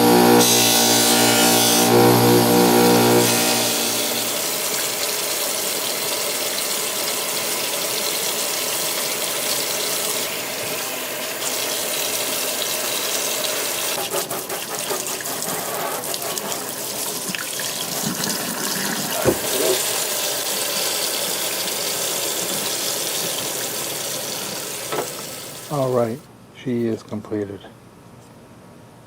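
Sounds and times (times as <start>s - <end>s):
tap water running: 0.0s - 26.3s.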